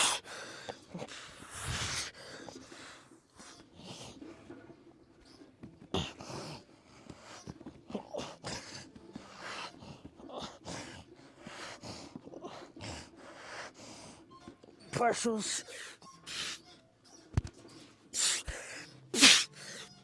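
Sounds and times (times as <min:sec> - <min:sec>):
man breathing hard: 0:00.0 - 0:04.0, 0:18.2 - 0:20.0.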